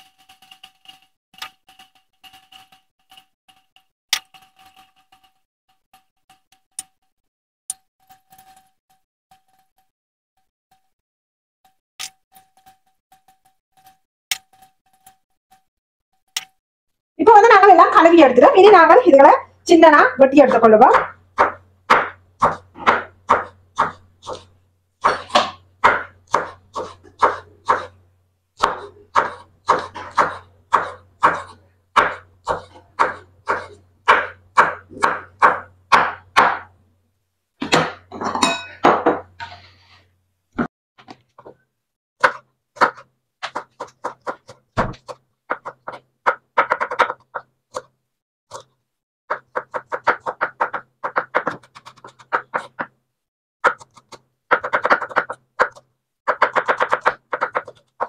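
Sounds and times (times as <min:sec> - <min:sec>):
knife chopping on cutting board: 0:21.0 - 0:28.0, 0:28.6 - 0:36.7, 0:37.6 - 0:38.1, 0:42.2 - 0:47.9, 0:49.3 - 0:53.0, 0:53.6 - 0:58.0.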